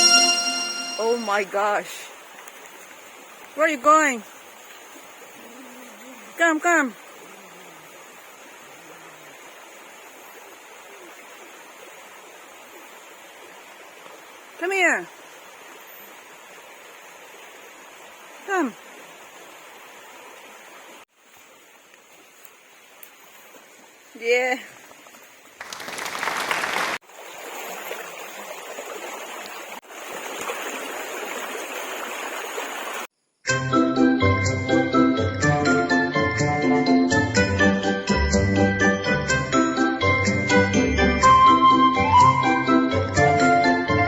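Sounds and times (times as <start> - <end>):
creek water rushing: 0.0 - 33.1.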